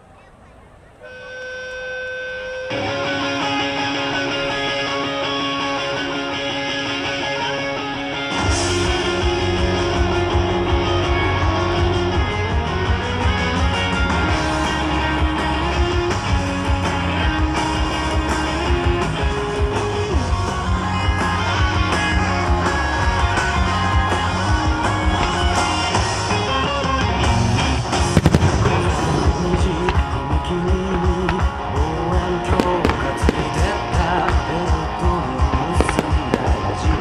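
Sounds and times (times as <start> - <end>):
guitar-led recorded music: 2.7 - 37.0
firework shell bursts popping: 28.2 - 30.2, 35.5 - 37.0.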